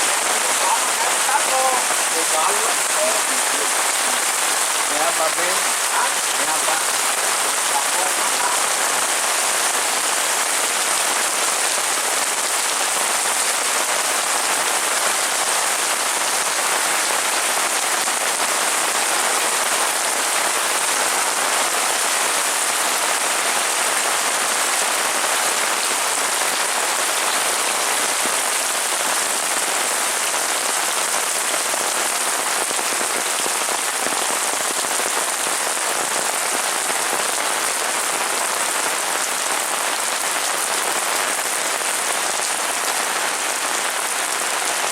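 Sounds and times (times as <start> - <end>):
heavy rain pouring: 0.0 - 44.9.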